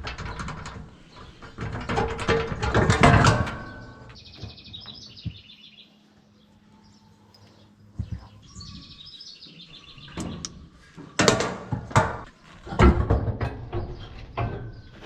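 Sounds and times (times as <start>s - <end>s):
knocks and clanks on baler: 0.0s - 4.9s, 11.2s - 15.0s
small birds chirping: 3.6s - 11.2s, 12.2s - 15.0s.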